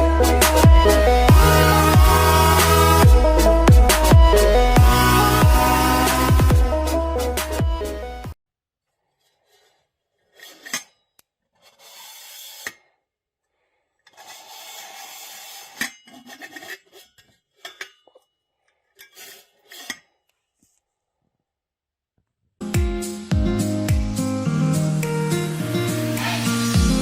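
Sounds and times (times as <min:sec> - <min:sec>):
rubbing and scraping: 0:09.0 - 0:13.0, 0:14.1 - 0:17.7, 0:19.0 - 0:20.1, 0:26.2 - 0:27.0.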